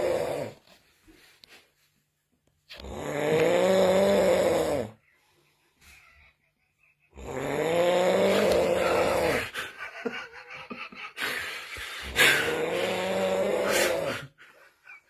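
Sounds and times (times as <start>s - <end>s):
person snoring heavily: 0.0s - 0.6s, 2.7s - 5.0s, 7.1s - 9.7s, 11.2s - 14.4s
soft breathing: 5.0s - 7.2s.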